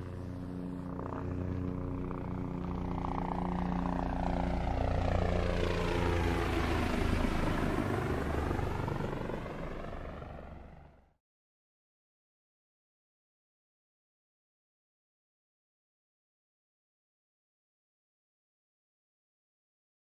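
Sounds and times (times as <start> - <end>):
aircraft engine drone: 0.0 - 11.0.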